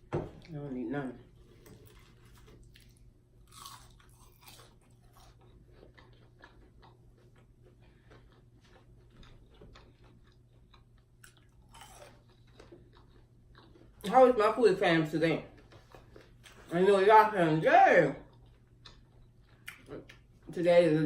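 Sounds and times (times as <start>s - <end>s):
person chewing crunchy food: 1.4s - 14.1s, 18.2s - 20.4s.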